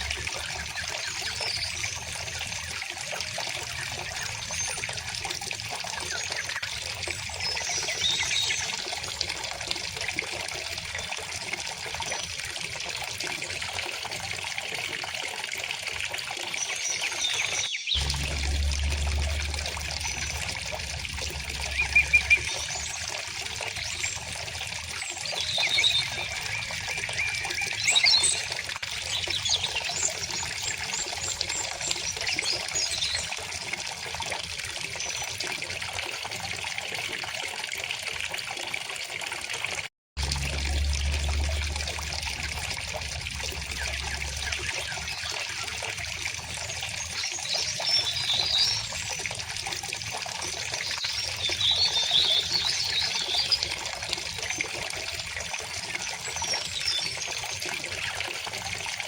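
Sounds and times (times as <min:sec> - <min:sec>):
low rumble: 0:18.0 - 0:23.4, 0:40.2 - 0:46.6
river flowing: 0:18.0 - 0:24.6, 0:40.2 - 0:47.1
small birds chirping: 0:21.3 - 0:30.9.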